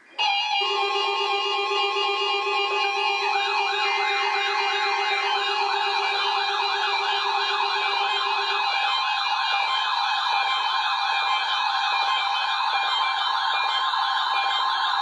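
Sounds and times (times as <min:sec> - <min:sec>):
warbling siren tones: 0:00.0 - 0:15.0.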